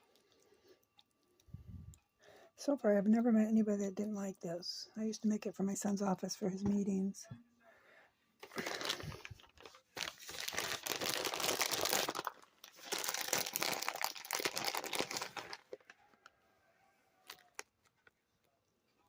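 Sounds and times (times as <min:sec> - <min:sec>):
packaging crinkling: 0:08.4 - 0:16.0, 0:17.2 - 0:18.2.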